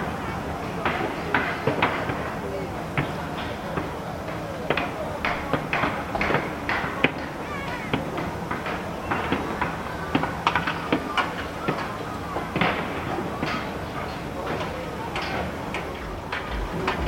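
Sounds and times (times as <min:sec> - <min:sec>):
steady background hum: 0:00.0 - 0:17.0
sharp knocks and clacks: 0:14.4 - 0:17.0.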